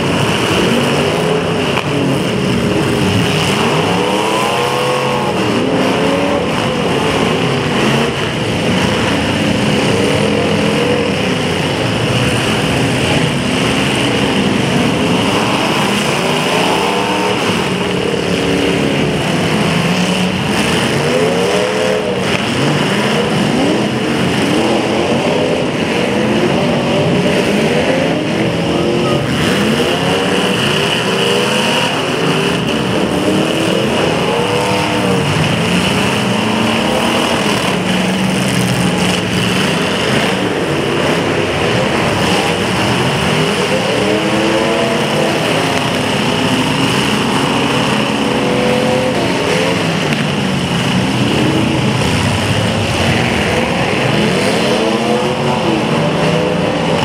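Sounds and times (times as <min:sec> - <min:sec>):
car engines revving: 0:00.0 - 0:57.0.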